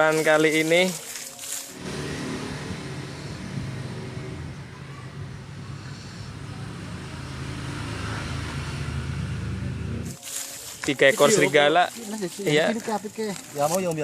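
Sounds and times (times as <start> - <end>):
low engine hum: 1.7 - 10.2.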